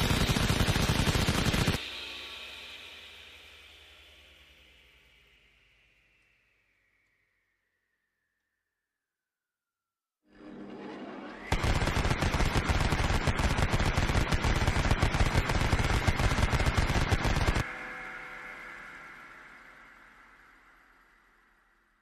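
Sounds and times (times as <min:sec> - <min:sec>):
rotary cannon rapid fire burst: 0:00.0 - 0:01.8, 0:11.5 - 0:17.6
rotary cannon spin-up whine: 0:00.0 - 0:07.0, 0:10.3 - 0:21.5.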